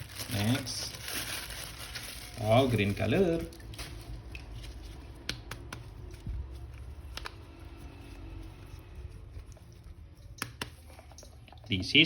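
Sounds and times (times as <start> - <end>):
plastic toy and packaging handled: 0.0 - 5.2
low steady hum: 0.0 - 12.0.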